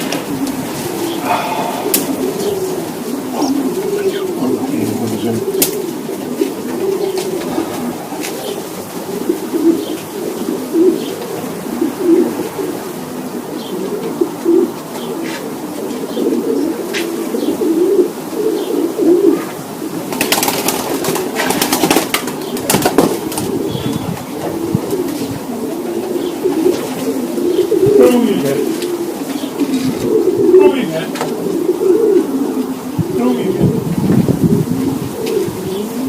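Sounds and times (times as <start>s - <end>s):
pigeons cooing: 0.0s - 36.0s
flurry of wingbeats: 20.0s - 25.4s.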